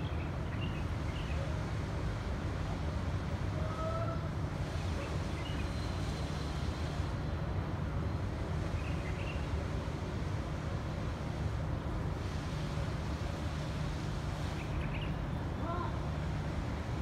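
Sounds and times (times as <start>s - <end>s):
low traffic rumble: 0.0s - 17.0s.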